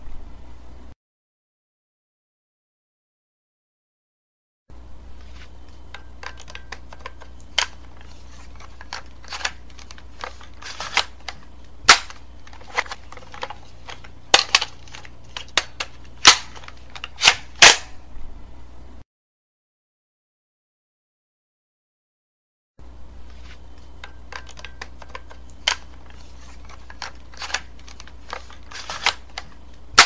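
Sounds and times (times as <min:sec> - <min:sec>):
low steady hum: 0:00.0 - 0:01.0, 0:04.7 - 0:19.0, 0:22.8 - 0:30.0
firearm parts clicking and clacking: 0:05.9 - 0:18.0, 0:24.0 - 0:30.0.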